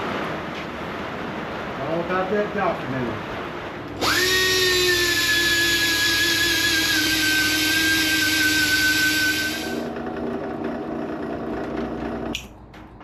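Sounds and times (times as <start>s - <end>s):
power tool whining: 4.0s - 12.4s
sharp click: 12.3s - 12.6s.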